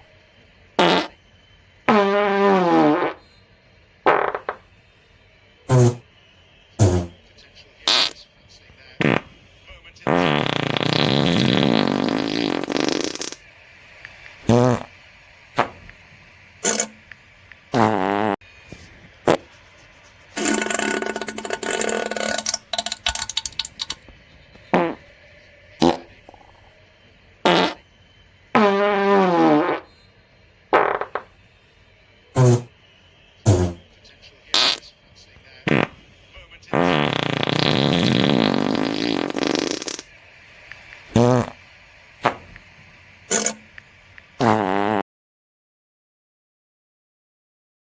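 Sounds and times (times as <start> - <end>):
fart sounds: 0.8 - 1.2, 1.9 - 3.2, 4.1 - 4.7, 5.7 - 6.1, 6.8 - 7.2, 7.8 - 8.2, 9.0 - 9.4, 10.0 - 13.5, 14.4 - 14.9, 15.6 - 16.0, 16.6 - 17.1, 17.7 - 18.4, 19.2 - 19.5, 20.4 - 24.0, 24.6 - 25.1, 25.8 - 26.8, 27.4 - 27.9, 28.5 - 29.9, 30.7 - 31.4, 32.4 - 32.8, 33.5 - 33.9, 34.5 - 34.9, 35.6 - 36.0, 36.7 - 40.1, 41.0 - 41.6, 42.2 - 42.6, 43.3 - 43.8, 44.4 - 45.0.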